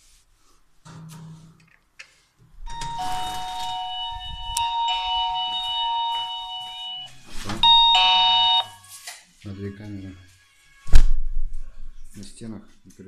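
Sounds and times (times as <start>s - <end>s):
electronic doorbell chime: 2.7s - 8.8s.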